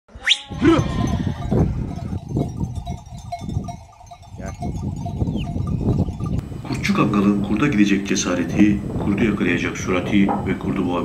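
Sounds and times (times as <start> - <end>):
livestock bleating: 0.5 - 1.9.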